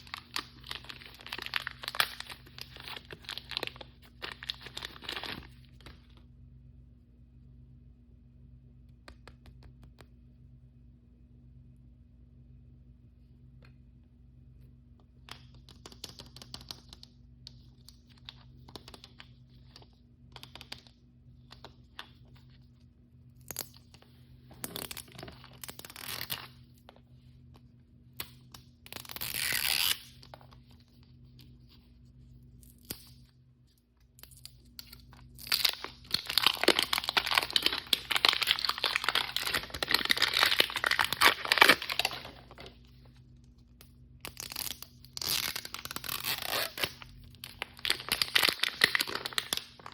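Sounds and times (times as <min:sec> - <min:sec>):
plastic packaging tearing: 0:00.0 - 0:05.5, 0:34.8 - 0:42.8, 0:44.2 - 0:49.9
plastic packaging crinkling: 0:00.0 - 0:06.2, 0:34.9 - 0:43.0, 0:44.4 - 0:49.9.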